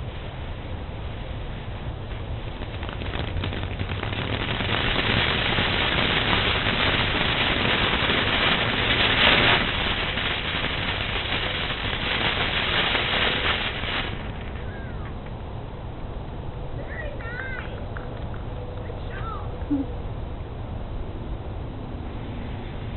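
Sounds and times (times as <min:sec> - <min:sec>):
firework crackling hiss: 0:00.0 - 0:15.4.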